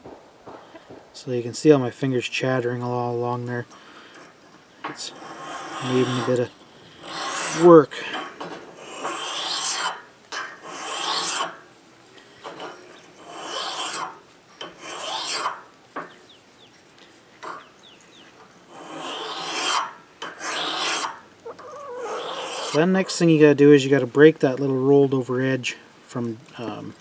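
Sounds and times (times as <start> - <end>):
blade rasping on sharpening stone: 5.0 - 11.6, 12.4 - 15.6, 18.7 - 21.1, 22.1 - 22.8.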